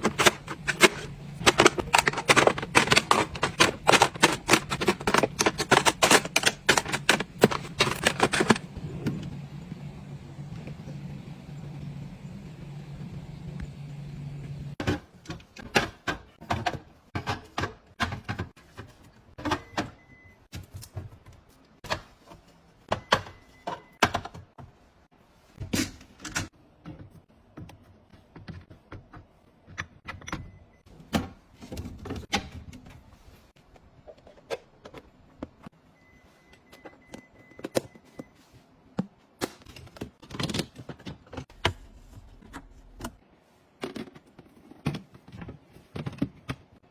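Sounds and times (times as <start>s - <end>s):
household items clicking and knocking: 0.0s - 9.6s.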